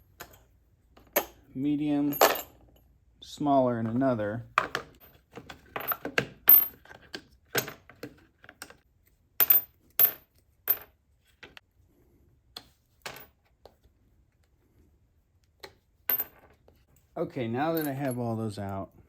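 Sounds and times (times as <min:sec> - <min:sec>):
steel bits clinking: 0:17.6 - 0:18.7.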